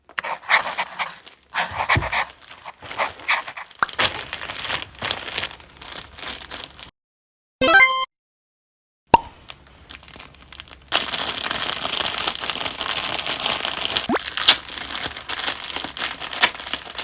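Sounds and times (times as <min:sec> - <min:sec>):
packaging crinkling: 0:00.2 - 0:06.8.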